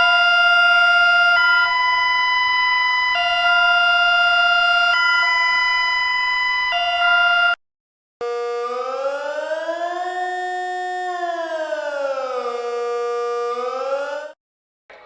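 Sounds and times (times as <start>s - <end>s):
two-tone alarm signal: 0.0s - 7.6s, 8.2s - 9.0s.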